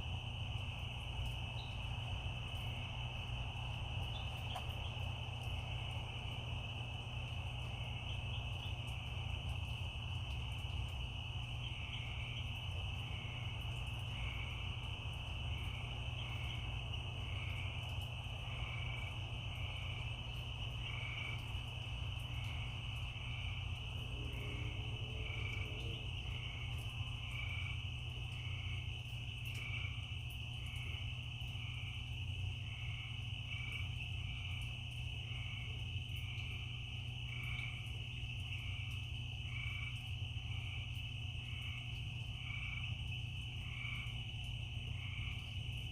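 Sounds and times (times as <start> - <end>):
crickets trilling: 0.0 - 45.9
low steady rumble: 0.0 - 45.9.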